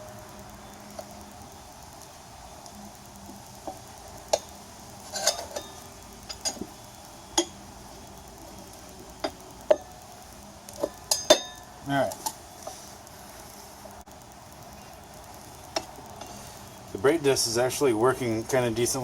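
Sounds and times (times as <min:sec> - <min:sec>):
tools clinking on metal wheel rim: 0:04.3 - 0:06.7, 0:10.8 - 0:12.4.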